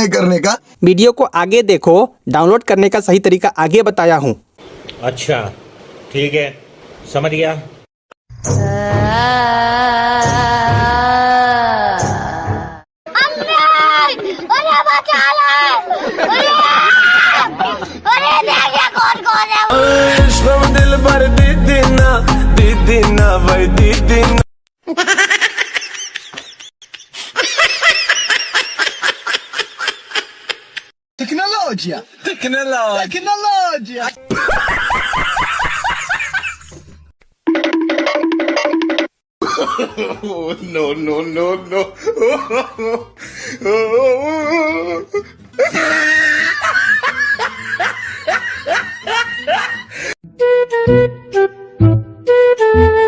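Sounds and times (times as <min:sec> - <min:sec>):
high-pitched snickering laugh: 0:24.9 - 0:30.8, 0:45.6 - 0:49.8
burst of laughter: 0:45.6 - 0:50.1.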